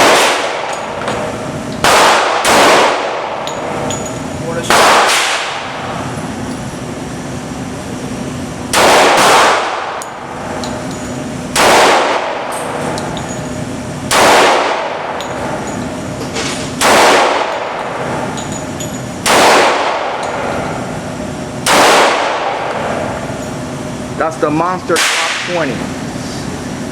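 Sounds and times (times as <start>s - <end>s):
pistol shots: 0.0s - 1.0s, 1.8s - 3.4s, 4.7s - 5.8s, 8.7s - 10.0s, 11.5s - 12.5s, 14.1s - 15.2s, 16.8s - 18.1s, 19.2s - 20.5s, 21.6s - 23.0s, 25.0s - 25.5s.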